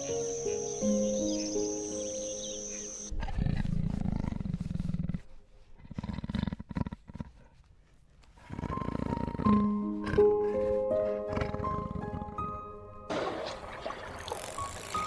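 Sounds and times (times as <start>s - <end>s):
high insect trill: 0.0s - 3.1s, 13.7s - 15.0s
soft piano music: 0.0s - 3.1s, 8.7s - 15.0s
big cat grunts: 8.4s - 12.6s.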